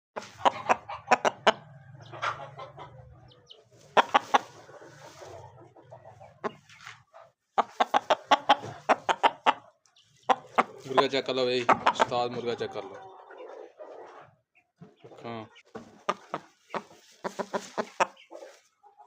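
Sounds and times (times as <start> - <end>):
rooster clucking: 0.2 - 19.0.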